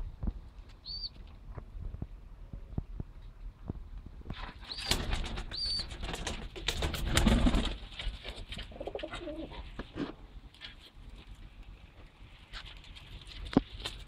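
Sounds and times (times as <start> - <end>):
pigeon wings flapping: 4.3 - 9.5
pigeons cooing: 8.7 - 9.7.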